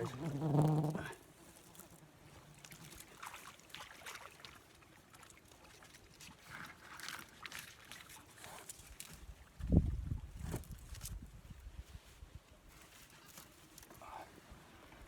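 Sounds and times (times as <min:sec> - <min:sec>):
soft water splashes: 0:02.4 - 0:11.0.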